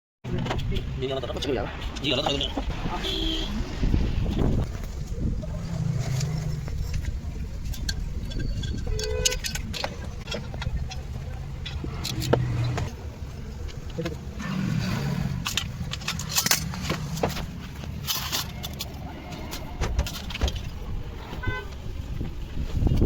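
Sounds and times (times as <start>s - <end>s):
car engine idling: 2.3s - 22.6s
sharp clicks and knocks: 6.1s - 13.0s.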